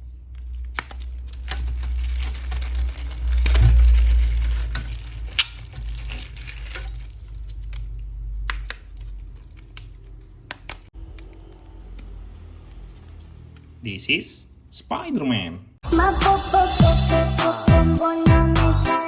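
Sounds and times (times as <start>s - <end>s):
plastic packaging crinkling: 0.0s - 13.5s.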